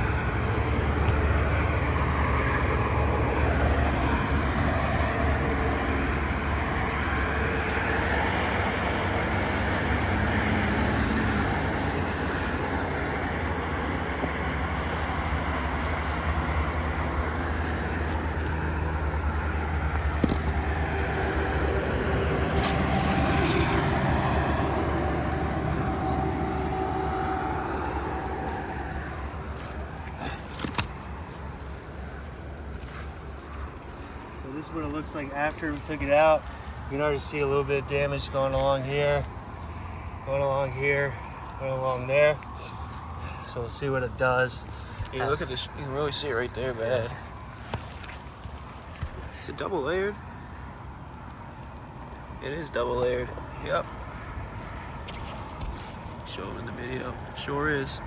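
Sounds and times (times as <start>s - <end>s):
low engine rumble: 0.0s - 58.0s.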